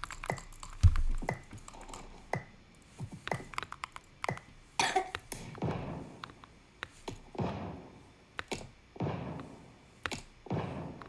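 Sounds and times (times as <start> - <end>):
light clicks and taps: 0.0 - 5.6.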